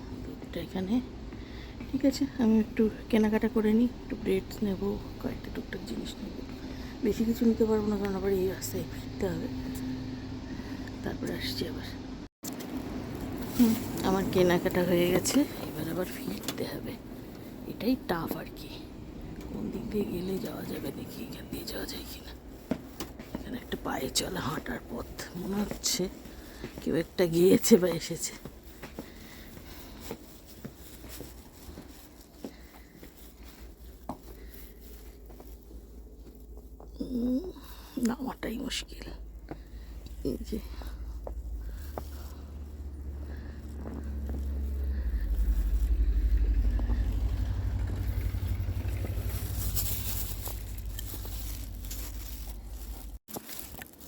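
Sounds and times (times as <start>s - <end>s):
footsteps crunching in snow: 20.0s - 37.2s, 38.4s - 54.0s
wind buffeting microphone: 40.9s - 52.9s.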